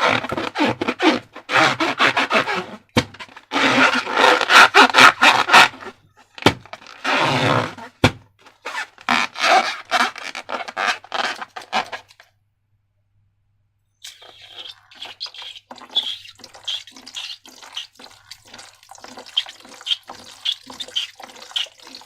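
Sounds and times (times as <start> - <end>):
air bubbles popping: 14.0 - 22.0.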